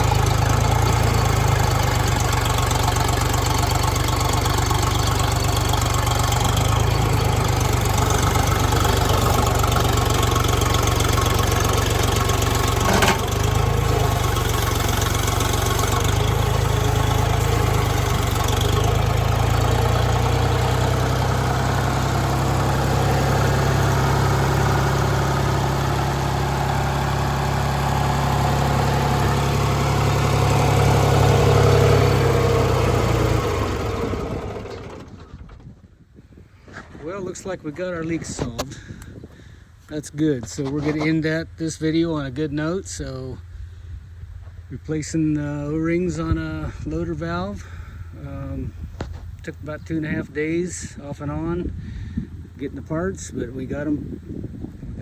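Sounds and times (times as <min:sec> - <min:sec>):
backhoe engine idling: 0:00.0 - 0:35.7, 0:41.0 - 0:55.0.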